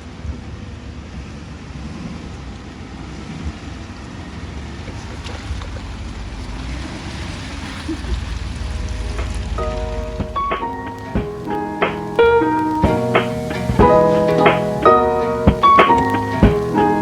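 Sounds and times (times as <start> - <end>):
pickup truck driving on dirt trail: 0.7 - 11.7.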